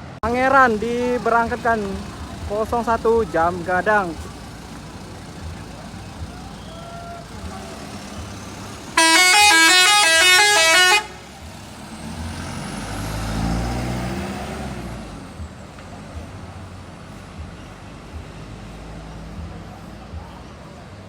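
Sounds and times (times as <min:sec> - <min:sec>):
bus engine rumbling past: 0:00.0 - 0:21.0
musical bus air horn: 0:06.4 - 0:11.4.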